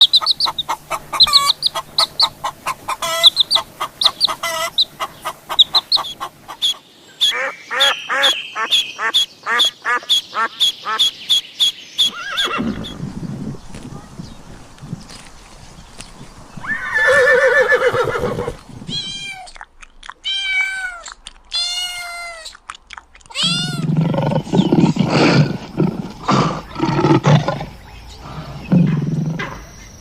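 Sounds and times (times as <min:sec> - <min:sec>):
animal chirping calls: 0:00.0 - 0:13.0
rising-and-falling animal calls: 0:00.0 - 0:13.0, 0:16.6 - 0:19.6, 0:23.3 - 0:29.7
low rough animal sound: 0:23.4 - 0:29.8.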